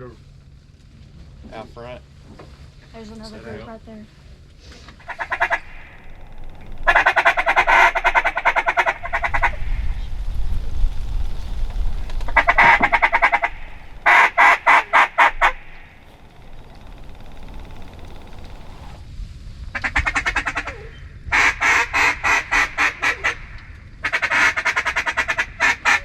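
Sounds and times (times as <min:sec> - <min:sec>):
duck call quacks: 0:04.9 - 0:10.0, 0:12.2 - 0:16.1, 0:19.8 - 0:26.0
duck call chuckle runs: 0:05.0 - 0:10.0, 0:12.0 - 0:16.0, 0:19.8 - 0:26.0.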